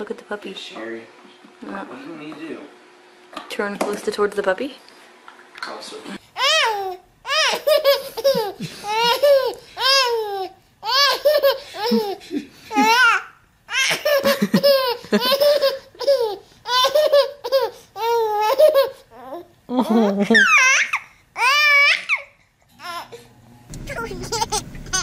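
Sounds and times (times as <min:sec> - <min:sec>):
baby giggling: 0:06.4 - 0:23.1, 0:24.0 - 0:25.0.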